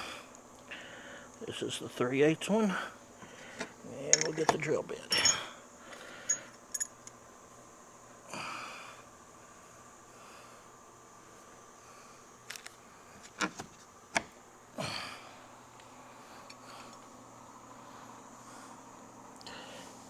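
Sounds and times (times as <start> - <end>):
small metal tools clicking: 4.1 - 5.4, 6.3 - 7.2.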